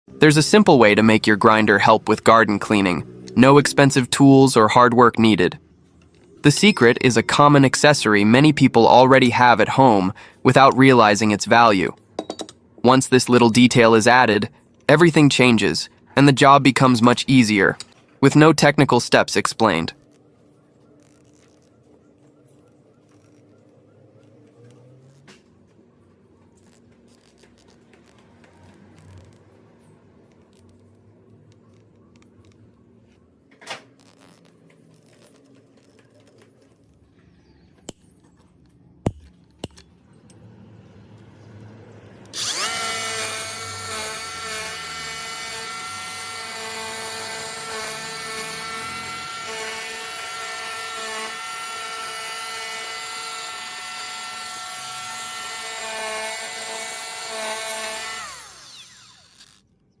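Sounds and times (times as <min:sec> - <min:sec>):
sharp clicks and knocks: 0:37.8 - 0:40.4
angle grinder whining: 0:42.3 - 0:59.7.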